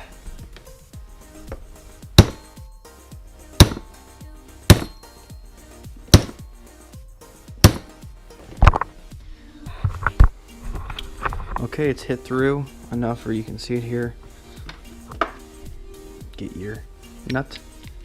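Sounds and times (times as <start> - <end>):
hammer striking metal: 2.2 - 2.6, 3.6 - 3.9, 4.7 - 5.1, 6.1 - 6.4, 7.6 - 7.9.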